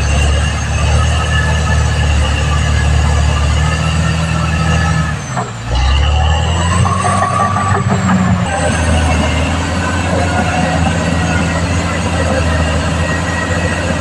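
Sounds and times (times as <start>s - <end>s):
bulldozer diesel engine under load: 0.0s - 14.0s
high metallic squeal from tracks: 0.0s - 14.0s.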